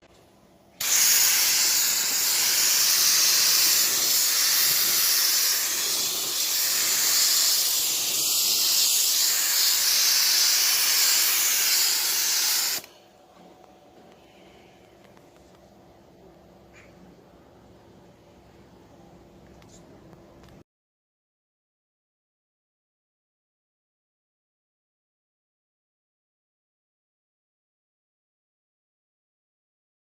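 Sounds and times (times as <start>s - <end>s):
loud steady hiss: 0.8s - 12.9s.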